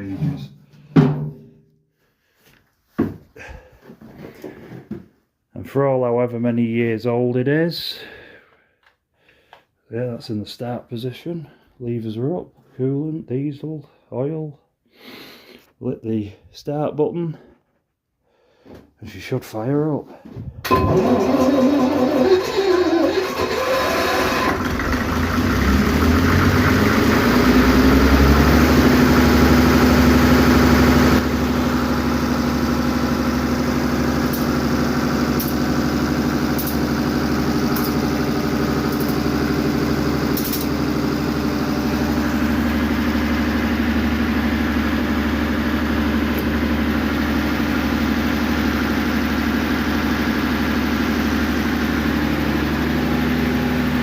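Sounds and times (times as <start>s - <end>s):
diesel generator engine starting: 20.5s - 54.0s.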